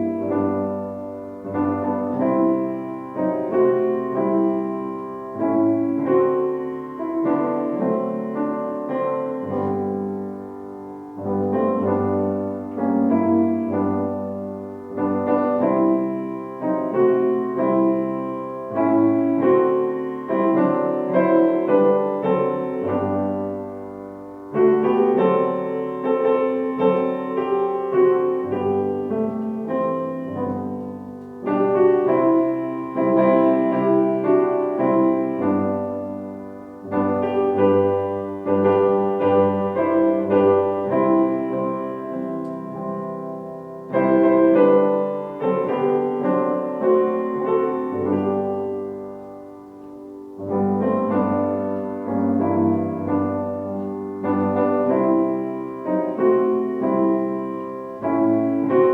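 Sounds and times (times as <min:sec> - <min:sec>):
slow solo piano chords: 0:00.0 - 0:58.9.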